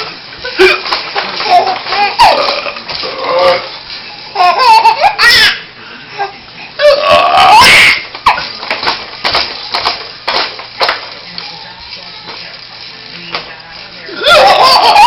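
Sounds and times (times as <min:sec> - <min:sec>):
baby laughing: 0:00.5 - 0:02.6, 0:04.3 - 0:06.4
man burping: 0:02.3 - 0:03.7, 0:06.8 - 0:07.6.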